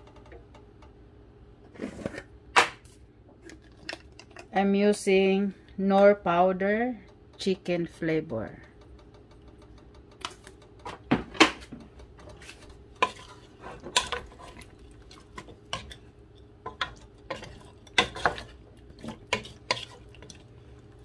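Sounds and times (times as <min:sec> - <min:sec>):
faint steady hum: 0:00.0 - 0:21.0
utensil scraping cooking pot: 0:12.0 - 0:21.0.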